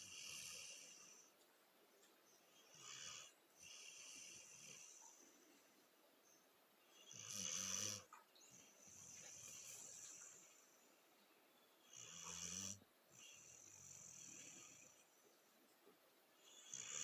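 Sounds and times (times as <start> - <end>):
small dog snoring: 0.0 - 1.3, 2.6 - 5.2, 7.0 - 10.6, 11.9 - 15.1, 16.4 - 17.0
soft hissing breath: 0.0 - 1.4, 2.3 - 11.1, 11.9 - 15.7.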